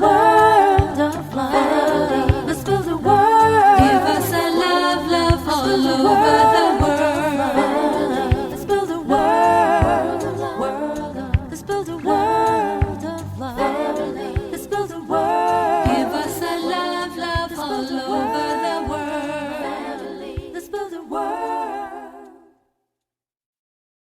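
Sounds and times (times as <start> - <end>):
low beat: 0.0 - 17.8
voices singing in harmony: 0.0 - 22.6.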